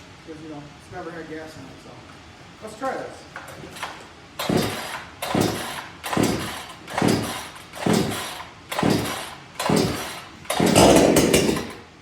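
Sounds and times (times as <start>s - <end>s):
chainsaw starter cord pulls: 3.4s - 11.9s.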